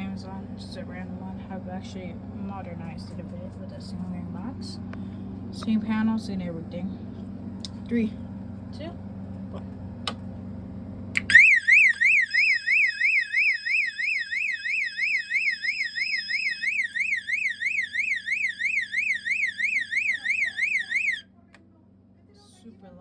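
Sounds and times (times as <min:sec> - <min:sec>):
fire alarm sweeping tone: 0:11.2 - 0:21.2.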